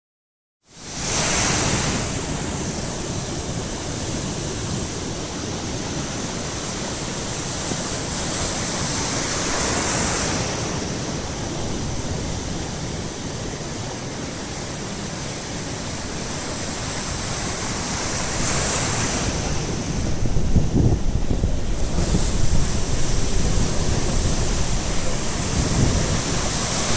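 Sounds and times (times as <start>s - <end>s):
surf washing onto shore: 0.8s - 26.9s
wind noise on microphone: 16.0s - 26.9s.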